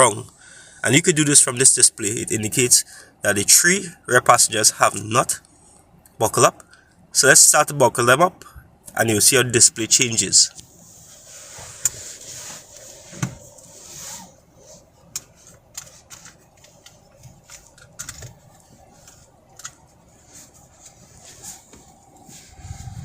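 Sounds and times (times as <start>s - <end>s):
seatbelt webbing rustling: 10.6s - 23.0s.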